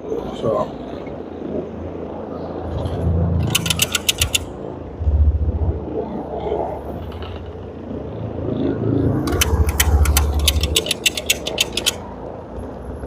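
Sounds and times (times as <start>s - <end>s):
rapid clicking and rattling: 3.4s - 4.5s, 9.2s - 12.1s.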